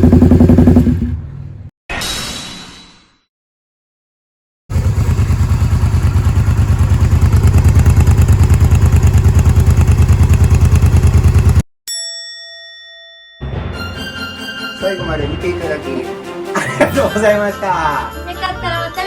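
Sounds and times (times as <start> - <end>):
motorcycle engine running loudly: 0.0 - 1.3, 4.7 - 11.6.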